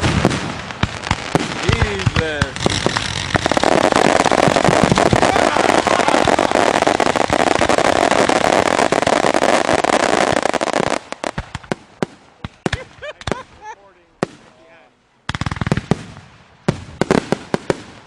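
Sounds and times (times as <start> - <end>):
scattered firework pops: 0.0 - 13.4
fireworks bangs and crackling: 0.0 - 18.0.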